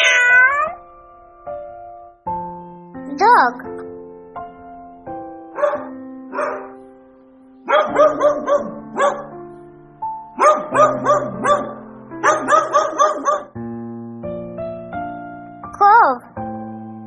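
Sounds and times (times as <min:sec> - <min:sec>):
gentle piano music: 0:00.0 - 0:17.0
dog barking: 0:05.5 - 0:06.8, 0:07.7 - 0:09.3, 0:10.4 - 0:13.6.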